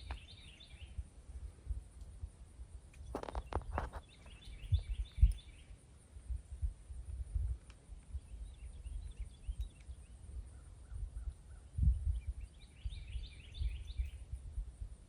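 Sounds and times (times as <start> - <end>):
small birds chirping: 0.0 - 1.1, 3.0 - 5.8, 7.7 - 14.4.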